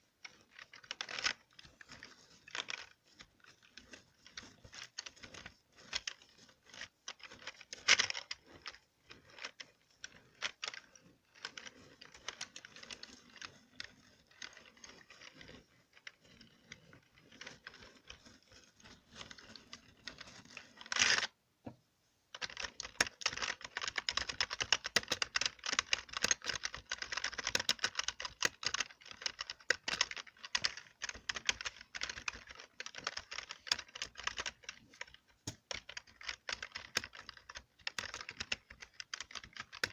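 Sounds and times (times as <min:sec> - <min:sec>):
keyboard typing: 0:22.4 - 0:39.9.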